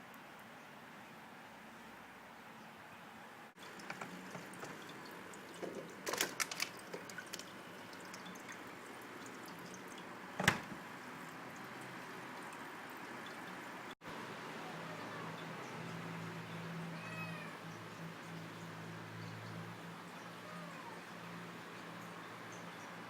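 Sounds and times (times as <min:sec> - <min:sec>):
small clicks and scrapes: 0:05.6 - 0:07.5.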